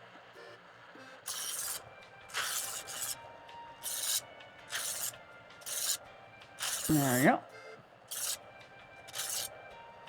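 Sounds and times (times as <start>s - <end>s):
electric knife sharpener grinding: 1.3s - 3.2s, 3.8s - 6.0s, 6.6s - 7.3s, 8.1s - 8.4s, 9.1s - 9.5s.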